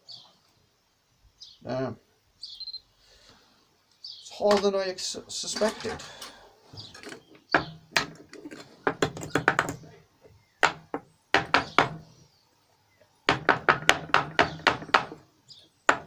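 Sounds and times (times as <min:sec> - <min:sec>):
knocks on metal mould: 0:08.9 - 0:09.8, 0:10.6 - 0:12.0, 0:13.3 - 0:15.2.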